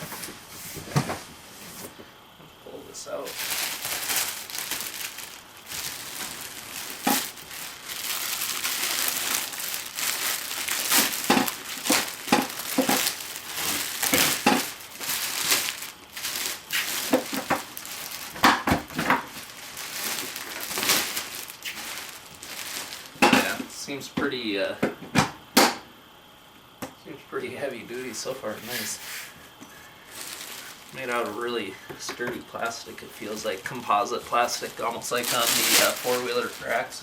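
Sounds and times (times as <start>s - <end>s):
packaging crinkling and rustling: 3.1s - 23.8s, 28.1s - 29.0s, 30.0s - 37.0s.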